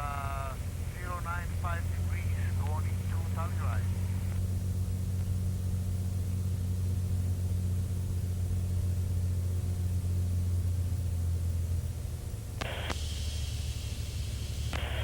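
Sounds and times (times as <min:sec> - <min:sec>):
radio static hiss: 0:00.0 - 0:04.5, 0:12.6 - 0:15.0
aircraft engine drone in cabin: 0:00.0 - 0:15.0.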